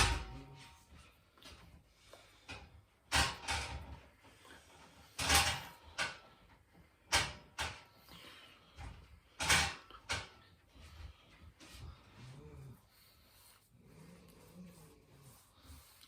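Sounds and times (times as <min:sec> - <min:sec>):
scraping and knocking noises: 0:00.0 - 0:16.0.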